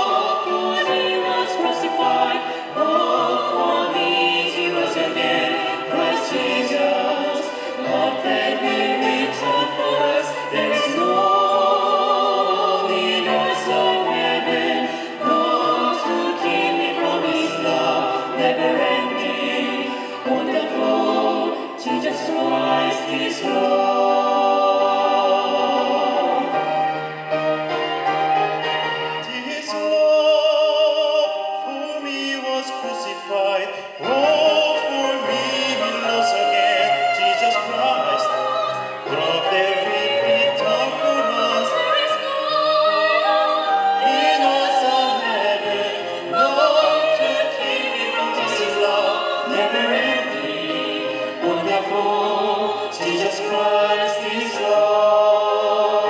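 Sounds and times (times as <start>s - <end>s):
operatic singer with vibrato: 0.0s - 26.8s, 29.1s - 56.0s
orchestra playing: 0.0s - 42.1s.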